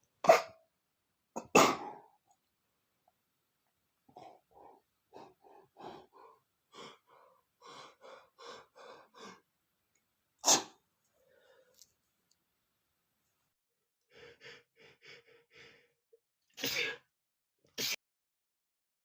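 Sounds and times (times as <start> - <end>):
man's catching breaths: 4.2 - 9.4
man sneezing: 10.4 - 10.8, 16.6 - 17.1.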